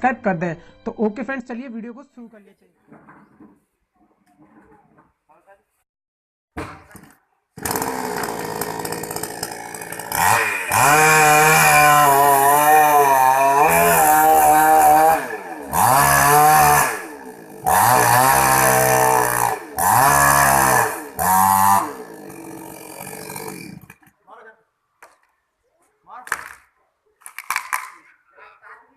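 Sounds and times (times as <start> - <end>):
chainsaw revving: 7.6 - 24.1.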